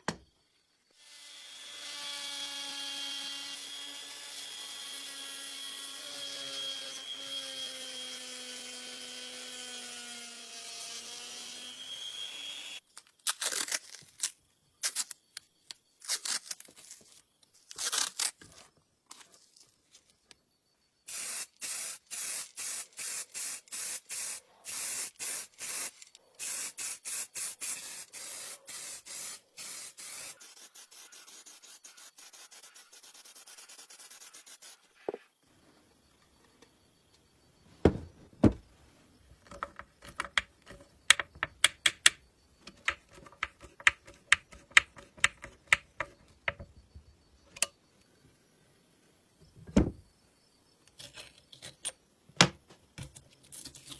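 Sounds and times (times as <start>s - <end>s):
aerosol spray can spraying: 21.1s - 34.8s
sharp clicks and knocks: 39.4s - 46.7s.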